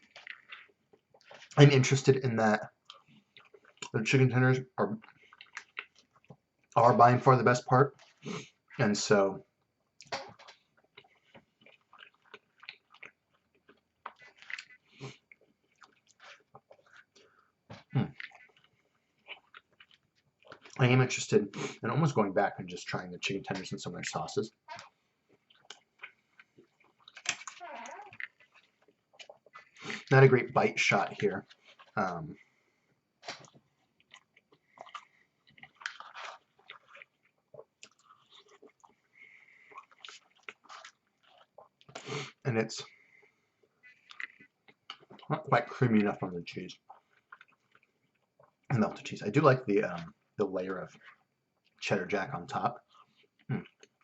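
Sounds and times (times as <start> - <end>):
person chewing food: 0.0 - 1.8, 2.6 - 4.0, 4.8 - 6.8, 7.9 - 8.8, 9.5 - 20.8, 24.5 - 30.1, 31.0 - 45.4, 46.7 - 48.8, 49.9 - 51.8, 52.4 - 54.0.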